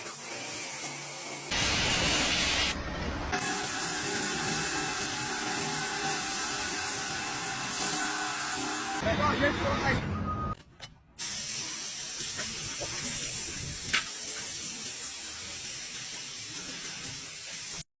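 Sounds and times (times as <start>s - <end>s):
paint sprayer hissing: 3.4s - 9.0s, 11.2s - 17.9s.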